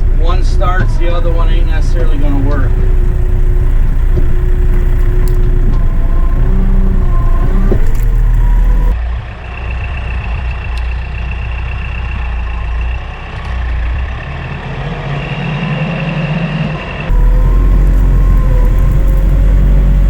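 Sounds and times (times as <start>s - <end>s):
thin high whine: 0.0s - 9.0s
tractor diesel engine: 0.0s - 20.0s.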